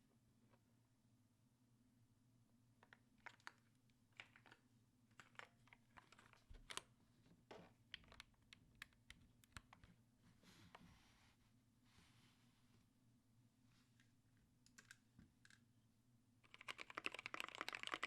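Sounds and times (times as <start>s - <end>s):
keyboard typing: 16.5s - 18.0s.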